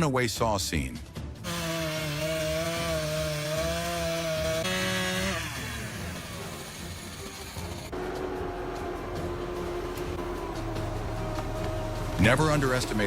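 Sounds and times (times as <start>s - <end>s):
chainsaw engine at high revs: 1.4s - 7.9s.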